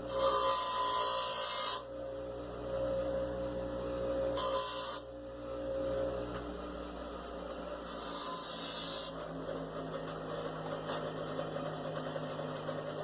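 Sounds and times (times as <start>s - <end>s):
bench grinder motor hum: 0.0s - 13.0s
metal grinding on wheel: 7.8s - 13.0s.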